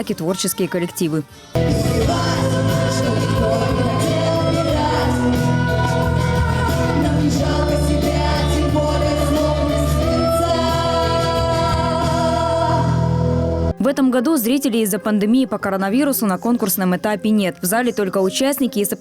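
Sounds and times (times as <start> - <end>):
person singing: 0.0 - 16.1
loud instrumental backing: 1.5 - 13.8.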